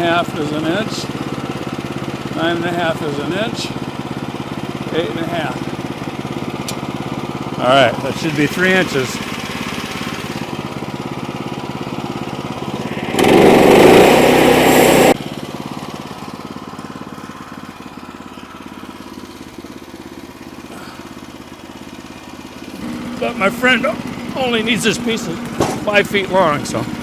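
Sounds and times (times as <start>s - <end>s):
small gasoline engine running: 0.0s - 27.0s
loud rushing burst: 12.6s - 15.2s.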